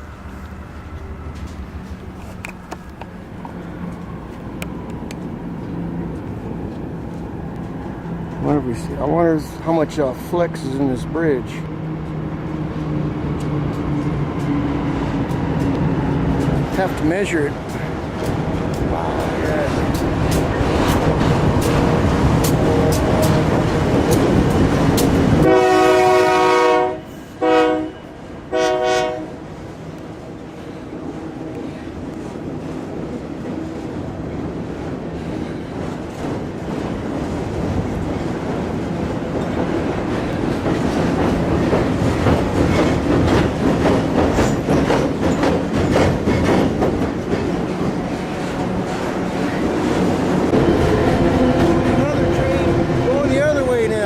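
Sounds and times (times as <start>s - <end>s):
freight train rumbling and clattering: 0.0s - 54.0s
locomotive air horn: 25.4s - 29.4s.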